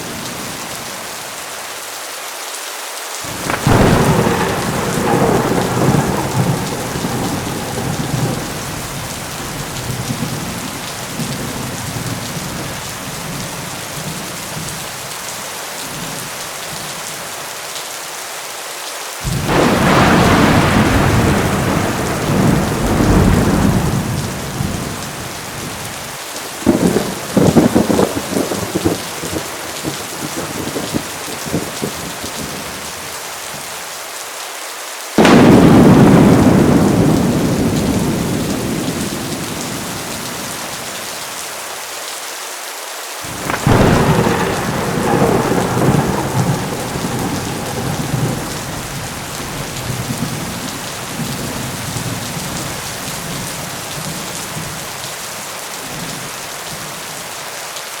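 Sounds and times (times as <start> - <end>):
heavy rain: 0.0 - 58.0
sharp cracking thunder peals: 3.3 - 12.7, 19.2 - 32.7, 35.2 - 40.9, 43.3 - 53.5
thunder clap: 3.3 - 12.8, 19.2 - 32.7, 35.2 - 41.0, 43.3 - 53.6
thunder rumbling: 3.3 - 14.9, 19.2 - 32.8, 35.2 - 41.2, 43.3 - 54.8.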